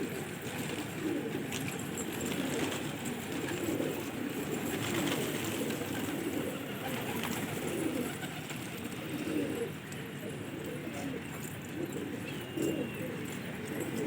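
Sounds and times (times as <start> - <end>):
pigeons cooing: 0.0 - 14.0.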